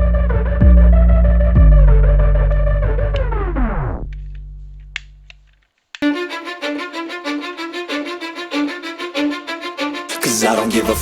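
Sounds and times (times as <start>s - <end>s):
low bass tone: 0.0s - 5.5s
beat with fast string riff: 6.0s - 11.0s.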